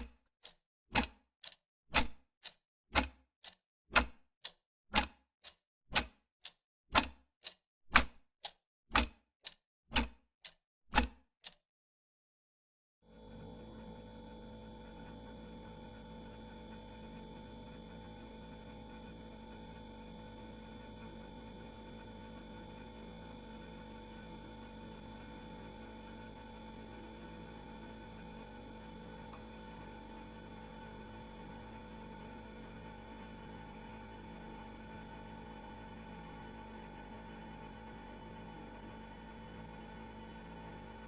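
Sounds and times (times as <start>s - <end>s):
refrigerator humming: 13.2s - 41.0s.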